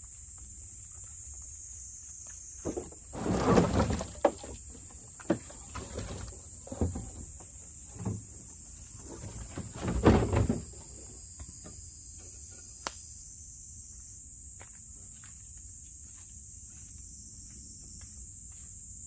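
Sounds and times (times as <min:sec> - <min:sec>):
wooden logs knocking: 0:02.6 - 0:08.2.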